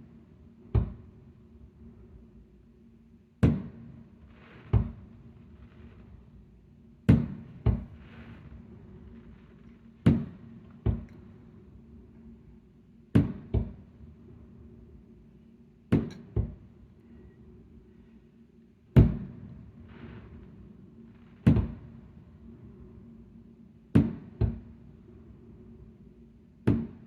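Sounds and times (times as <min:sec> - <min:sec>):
fireworks bangs: 0:07.2 - 0:11.2.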